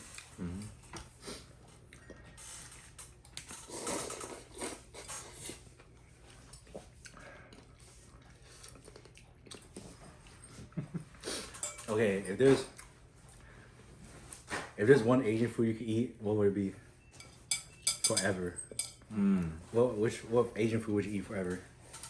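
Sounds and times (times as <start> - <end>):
chewing: 0.0 - 12.0
slurping noodle soup: 2.4 - 5.7.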